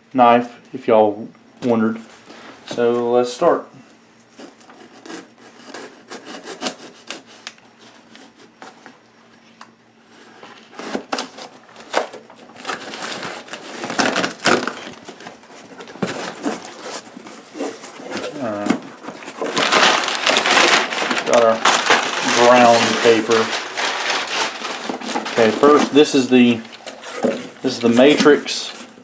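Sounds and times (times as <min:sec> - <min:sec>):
knife cutting tape and cardboard: 0:04.8 - 0:07.5.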